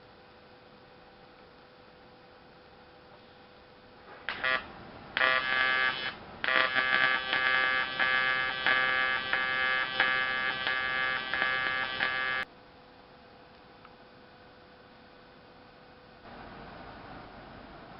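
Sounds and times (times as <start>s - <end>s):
welding arc buzzing: 4.1s - 12.5s.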